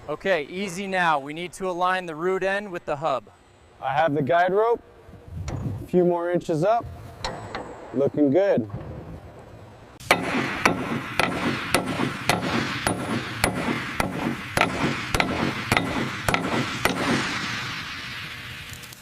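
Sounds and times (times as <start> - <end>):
steady hiss: 0.0 - 19.0
hammer blows: 6.8 - 18.9.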